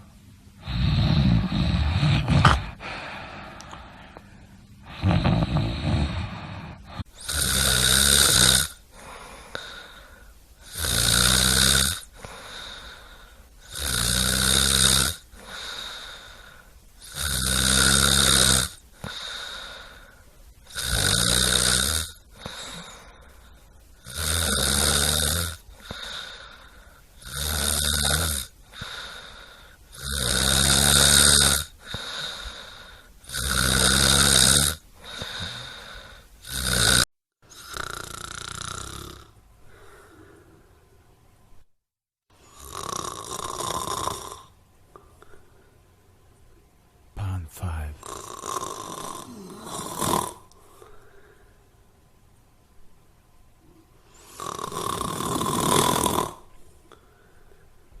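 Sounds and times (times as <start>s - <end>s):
soft breaths: 0.0s - 7.2s, 8.8s - 10.6s, 12.1s - 13.7s, 15.3s - 17.0s, 18.9s - 20.6s, 22.3s - 24.0s, 25.6s - 27.2s, 28.6s - 29.9s, 31.8s - 33.2s, 34.9s - 36.4s, 39.6s - 41.2s, 44.9s - 46.2s, 48.8s - 52.0s, 56.4s - 58.0s
person snoring: 0.6s - 4.1s, 4.8s - 20.1s, 20.7s - 23.2s, 24.0s - 40.6s, 42.4s - 44.6s, 47.2s - 51.4s, 54.2s - 57.0s.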